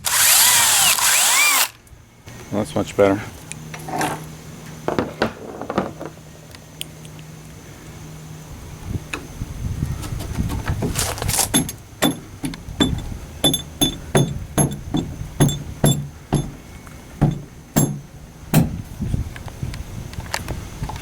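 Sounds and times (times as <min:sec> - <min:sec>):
hammer striking metal: 0:11.6 - 0:16.6, 0:17.2 - 0:18.8.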